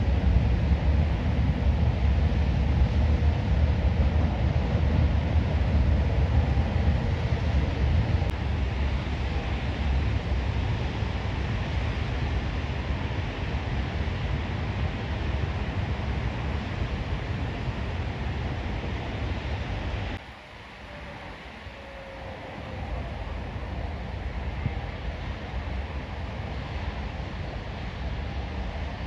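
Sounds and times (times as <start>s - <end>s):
heavy low rumble: 0.0s - 20.2s.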